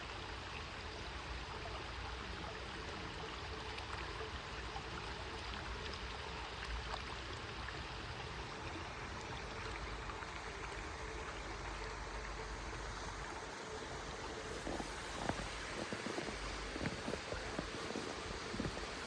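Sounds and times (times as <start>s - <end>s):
stream flowing: 0.0s - 19.0s.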